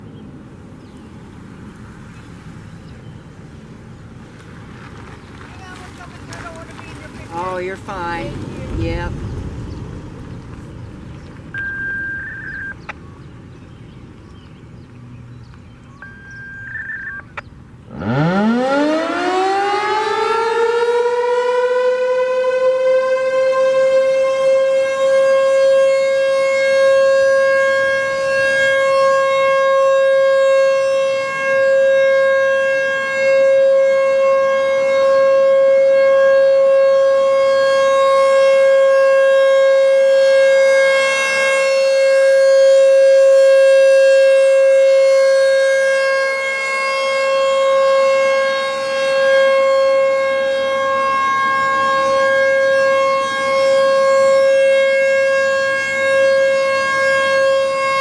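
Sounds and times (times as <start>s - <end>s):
warning siren steady tone: 11.5s - 13.2s, 15.9s - 58.0s.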